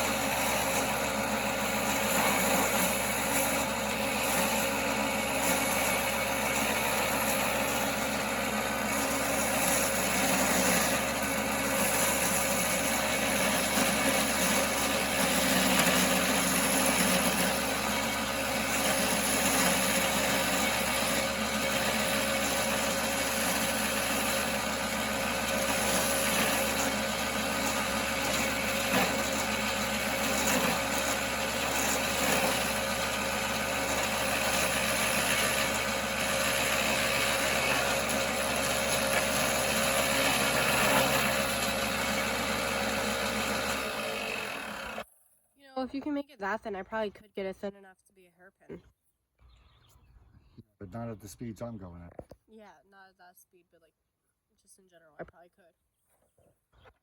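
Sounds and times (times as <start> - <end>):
wood lathe running: 0.0 - 45.1.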